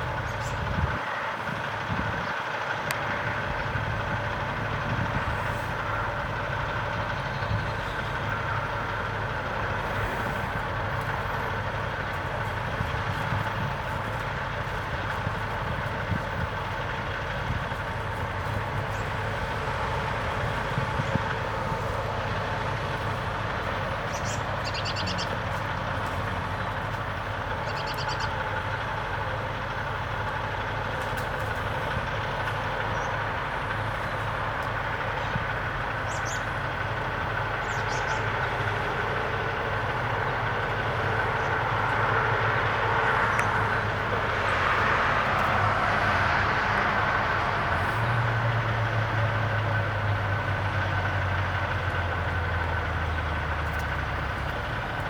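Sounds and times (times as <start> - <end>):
traffic hum: 0.0 - 55.0
vehicle engine running: 0.0 - 55.0
high bird chirps: 24.1 - 25.3, 27.6 - 28.4, 36.1 - 36.5, 37.6 - 38.3.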